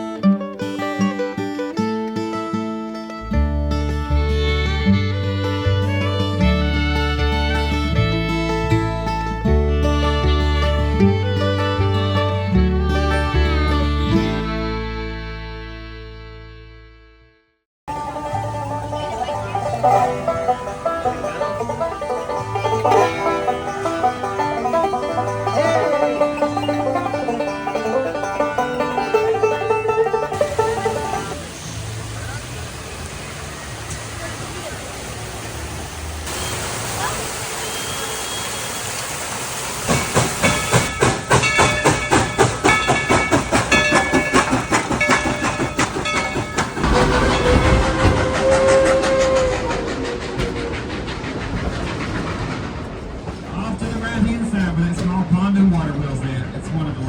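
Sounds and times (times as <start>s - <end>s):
steam locomotive chuffing: 0.0s - 15.9s, 17.9s - 57.0s
banjo picking: 0.0s - 17.2s, 17.9s - 34.8s, 39.9s - 52.7s
bass line: 3.0s - 34.4s.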